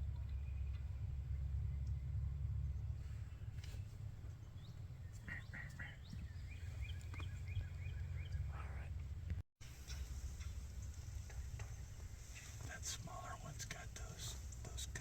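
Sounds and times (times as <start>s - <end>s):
steady low rumble: 0.0s - 15.0s
bird calling: 3.2s - 9.0s.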